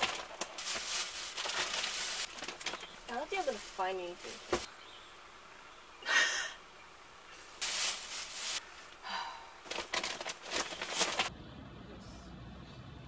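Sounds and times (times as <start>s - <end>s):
rummaging through objects: 0.0s - 4.7s, 7.6s - 8.6s, 9.6s - 11.3s.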